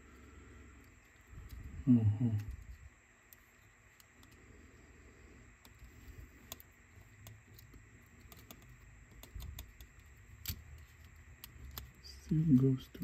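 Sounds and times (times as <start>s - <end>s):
small clicks and taps: 5.6s - 13.0s.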